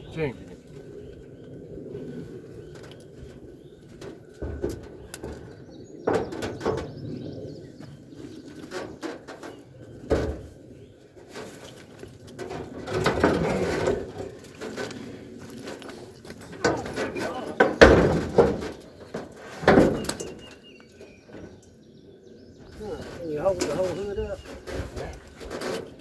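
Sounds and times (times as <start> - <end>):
metal knocks and clunks: 4.0 - 7.0, 12.3 - 15.0, 15.6 - 20.6, 22.6 - 26.0.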